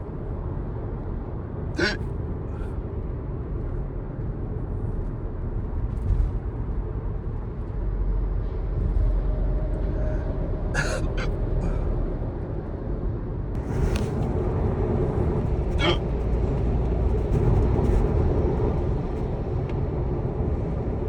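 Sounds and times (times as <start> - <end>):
car cabin road and engine noise: 0.0 - 21.0
man hiccuping: 1.8 - 2.0, 10.8 - 11.4, 15.7 - 16.0.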